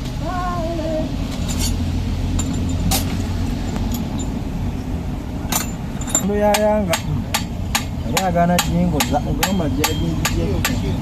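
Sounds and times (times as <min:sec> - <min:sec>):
vehicle engine rumbling: 0:00.0 - 0:11.0
sharp metallic clinks: 0:01.3 - 0:04.5, 0:05.4 - 0:11.0.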